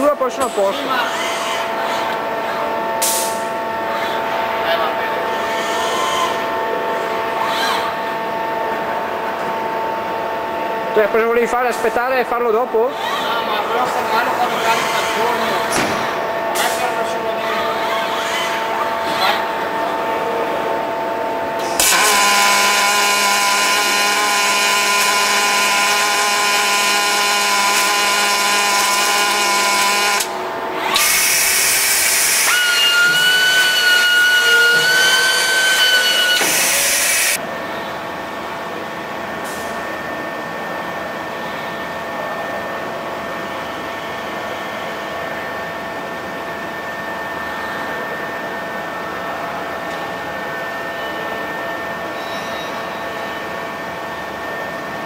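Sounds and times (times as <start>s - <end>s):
steady hum: 6.3s - 32.5s.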